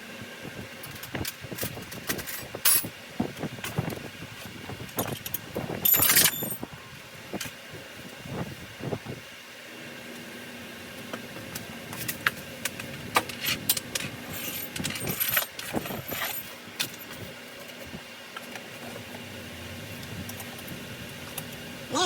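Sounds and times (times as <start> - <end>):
metal tools clinking: 5.8 - 6.6, 13.4 - 17.0.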